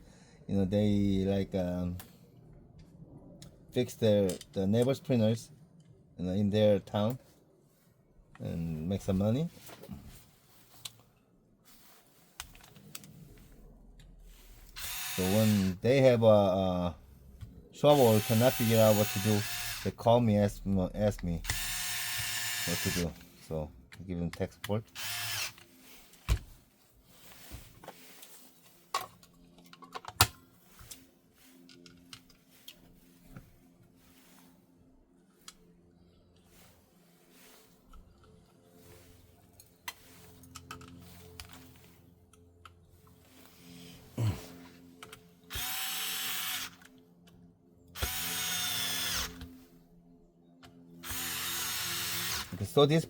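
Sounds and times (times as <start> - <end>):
power drill motor running: 14.6 - 15.8, 17.9 - 20.0, 21.4 - 23.3, 24.9 - 25.6, 45.5 - 46.8, 48.0 - 49.5, 51.0 - 52.8.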